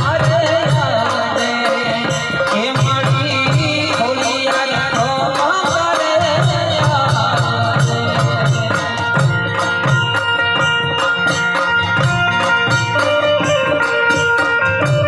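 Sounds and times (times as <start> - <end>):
rattling hand percussion: 0.0 - 15.0
steady drum beat: 0.0 - 15.0.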